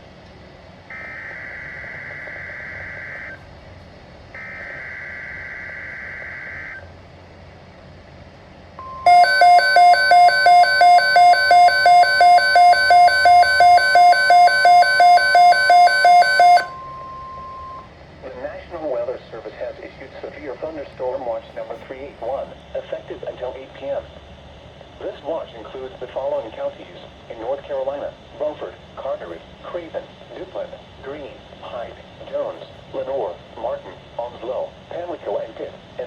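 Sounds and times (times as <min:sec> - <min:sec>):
loud alert beeping: 0:08.8 - 0:17.9
steady single tone: 0:08.8 - 0:17.9.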